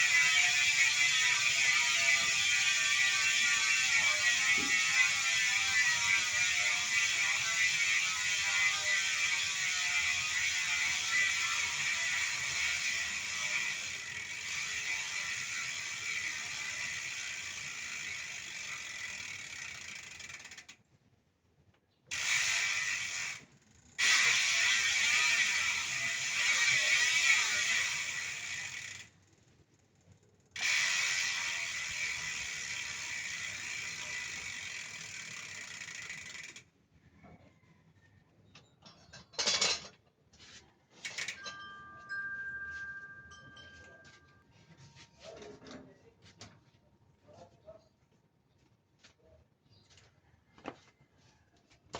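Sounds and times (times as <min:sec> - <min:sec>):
bicycle freehub ratchet buzzing: 0:00.0 - 0:20.8, 0:22.1 - 0:29.4, 0:30.0 - 0:36.8, 0:41.0 - 0:41.5.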